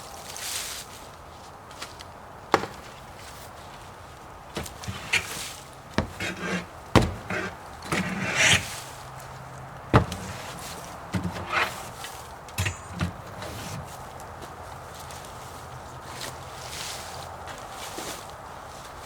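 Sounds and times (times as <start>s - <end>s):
sharp knocks of wood: 2.5s - 3.0s, 4.6s - 8.7s, 9.9s - 12.0s, 12.6s - 14.0s
rustling scrapes: 4.6s - 9.4s, 10.0s - 14.2s.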